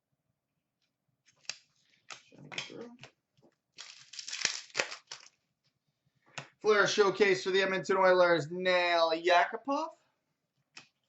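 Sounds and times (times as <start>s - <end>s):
trading cards rustling: 3.7s - 5.4s.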